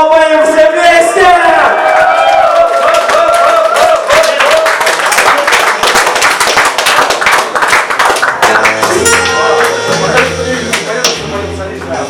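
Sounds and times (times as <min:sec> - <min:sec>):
audience clapping in rhythm: 0:02.0 - 0:12.0
band bass and keyboard: 0:08.3 - 0:12.0.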